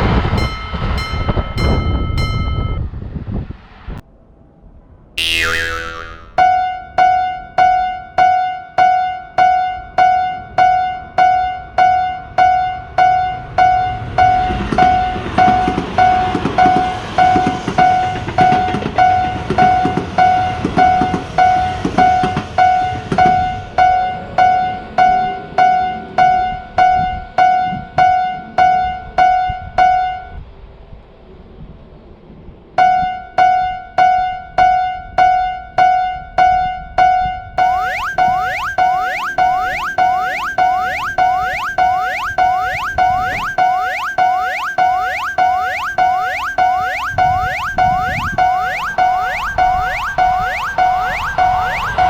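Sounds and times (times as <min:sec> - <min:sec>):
railroad crossing bell ringing: 0:00.0 - 0:03.1, 0:12.5 - 0:26.4, 0:37.6 - 0:52.0
train running past: 0:00.0 - 0:05.0, 0:12.2 - 0:26.8, 0:37.6 - 0:52.0.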